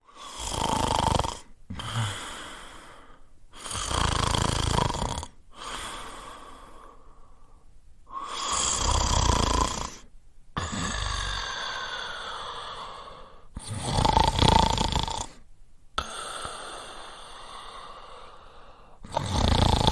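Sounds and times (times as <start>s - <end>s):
quiet breath: 0.0s - 0.6s, 1.4s - 4.0s, 5.3s - 13.9s, 15.2s - 19.3s
person snoring: 0.0s - 7.0s, 8.1s - 15.4s, 16.0s - 19.9s.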